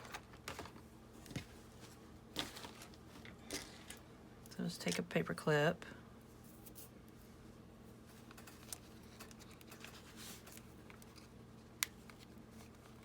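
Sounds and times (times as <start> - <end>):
paper rustling: 0.0 - 4.0.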